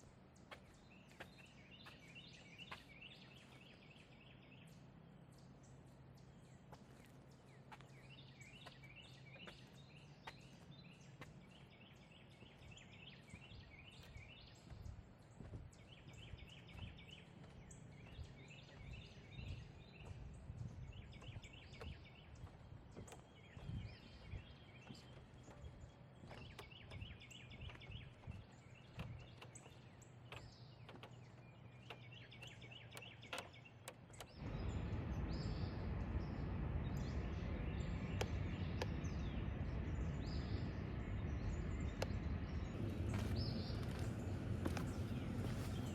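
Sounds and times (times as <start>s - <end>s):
songbird trilling: 7.3s - 45.9s
soft low thumps: 12.4s - 33.5s, 34.2s - 45.9s.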